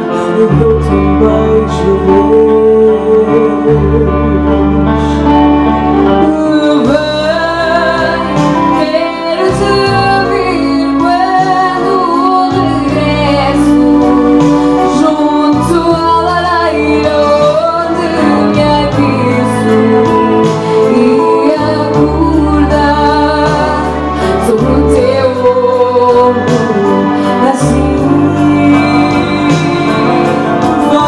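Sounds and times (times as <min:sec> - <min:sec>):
instrumental accompaniment: 0:00.0 - 0:31.0
woman singing a slow song: 0:00.0 - 0:31.0.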